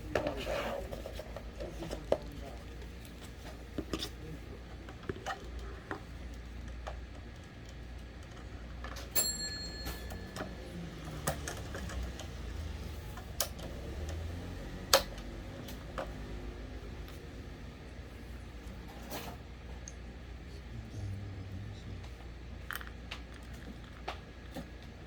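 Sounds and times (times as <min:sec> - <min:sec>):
small parts clicking and tapping: 0:09.8 - 0:14.2.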